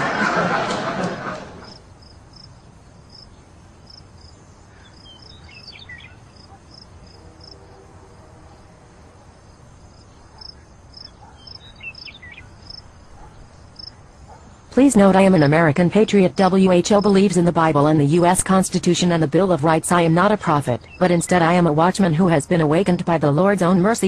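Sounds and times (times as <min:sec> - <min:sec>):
crickets chirping: 0:01.6 - 0:17.4.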